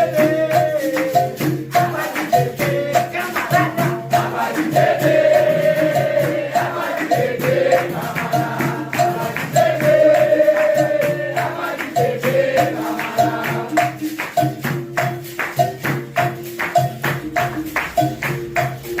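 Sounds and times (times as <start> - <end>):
person singing: 0.0 - 14.1
pandeiro and berimbau rhythm: 0.0 - 19.0.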